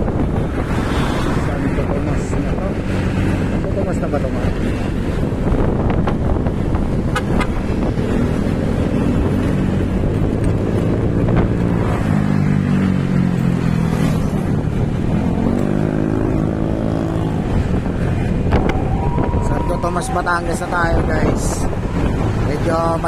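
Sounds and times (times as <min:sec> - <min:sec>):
vehicle engine accelerating: 0:00.0 - 0:23.0.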